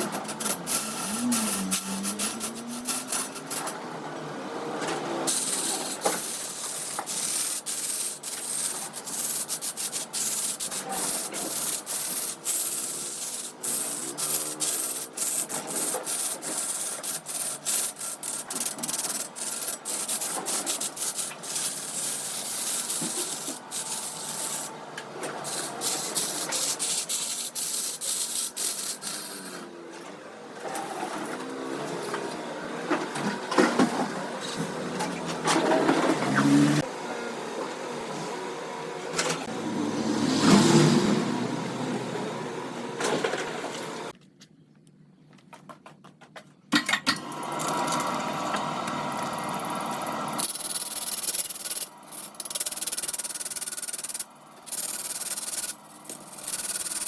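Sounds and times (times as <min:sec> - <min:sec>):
tool scraping wood on lathe: 0:00.0 - 0:03.8, 0:05.3 - 0:29.7.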